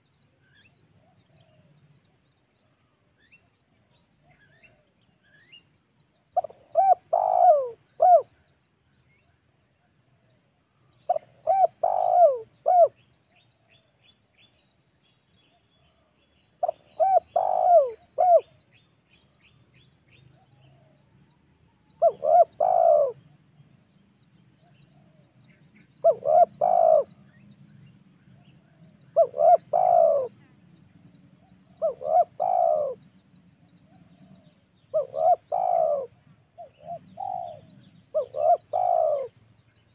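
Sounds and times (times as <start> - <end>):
dove cooing: 6.4 - 8.5, 11.1 - 13.0, 16.6 - 18.6, 21.9 - 23.4, 24.6 - 27.4, 28.4 - 30.5, 31.4 - 33.1, 33.9 - 39.4.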